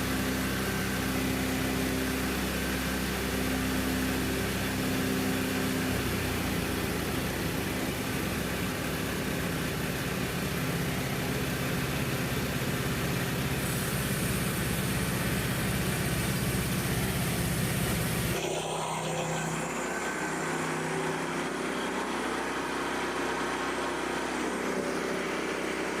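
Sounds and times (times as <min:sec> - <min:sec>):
sawmill engine running: 0:00.0 - 0:26.0
high hiss: 0:13.6 - 0:18.4.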